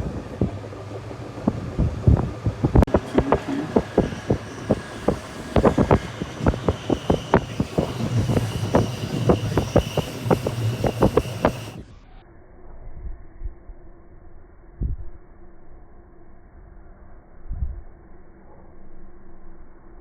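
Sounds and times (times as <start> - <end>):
train wheels clacking: 0.0 - 11.8
train rumbling on rails: 0.0 - 12.0
low hum: 0.0 - 20.0.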